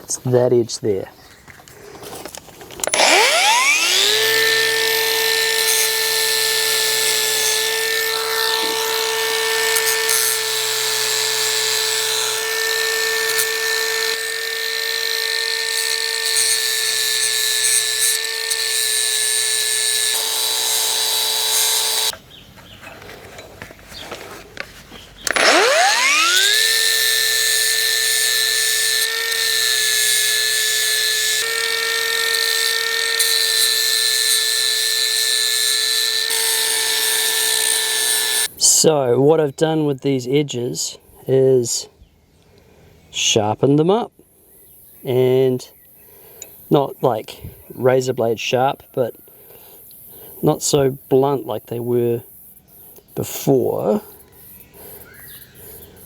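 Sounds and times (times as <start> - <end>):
rotary tool grinding metal: 2.0 - 22.2, 22.8 - 38.8.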